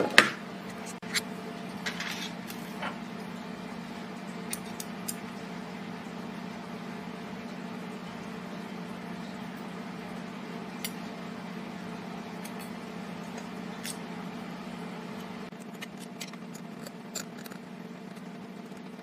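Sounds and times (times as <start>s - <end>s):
machine humming: 0.0s - 19.0s.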